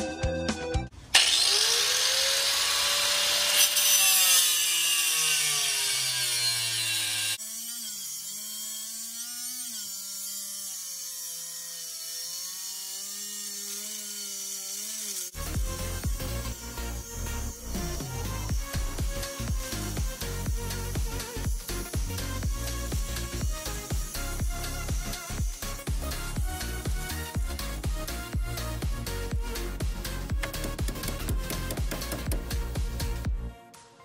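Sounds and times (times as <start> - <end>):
power tool cutting with whine: 1.1 - 33.2
wavering machine whine: 15.3 - 29.2.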